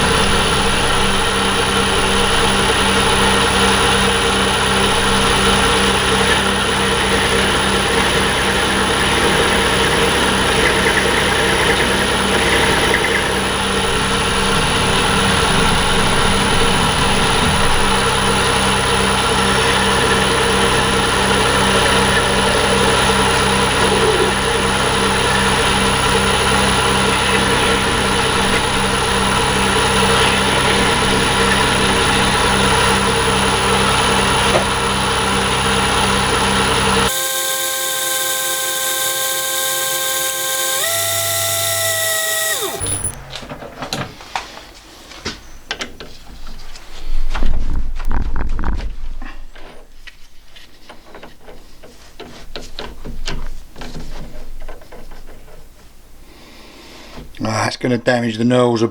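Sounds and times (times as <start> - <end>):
metal lathe humming and whining: 0.0 - 43.2.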